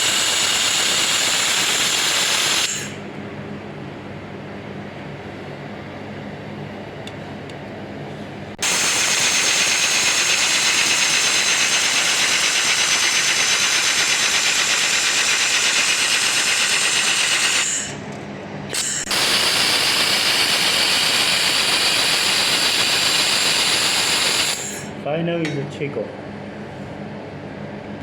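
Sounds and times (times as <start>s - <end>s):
laser weld hissing: 0.0s - 3.0s, 8.6s - 18.0s, 18.7s - 24.9s
laser welder humming: 0.0s - 3.0s, 8.6s - 25.0s.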